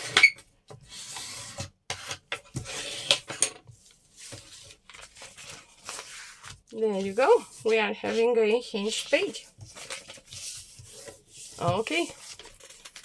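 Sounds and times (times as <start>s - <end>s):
paper rubbing strokes: 4.1s - 12.7s.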